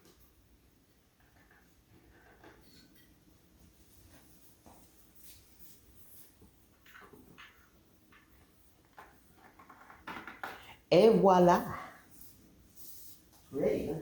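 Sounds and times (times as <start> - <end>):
faint rustling and handling: 1.2 - 10.1, 11.9 - 14.0.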